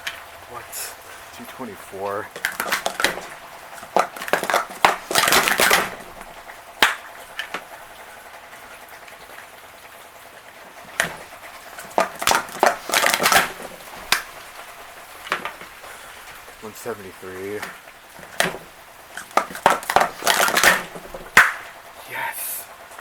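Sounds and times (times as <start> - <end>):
plastic cups clattering: 0.0 - 7.8, 10.8 - 21.8.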